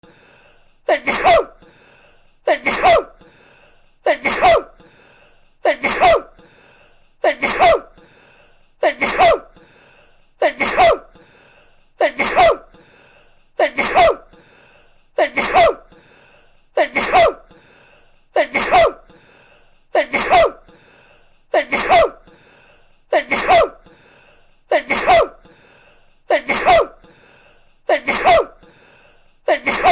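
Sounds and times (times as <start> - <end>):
man sneezing: 0.9 - 1.6, 2.5 - 3.2, 4.0 - 4.8, 5.6 - 6.4, 7.2 - 7.9, 8.8 - 9.6, 10.4 - 11.1, 12.0 - 12.7, 13.6 - 14.3, 15.2 - 15.9, 16.8 - 17.5, 18.4 - 19.1, 19.9 - 20.7, 21.5 - 22.3, 23.1 - 23.8, 24.7 - 25.5, 26.3 - 27.1, 27.9 - 28.6, 29.5 - 29.9.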